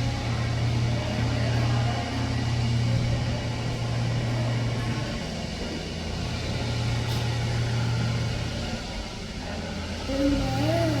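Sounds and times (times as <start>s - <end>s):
heavy machine engine humming: 0.0s - 11.0s.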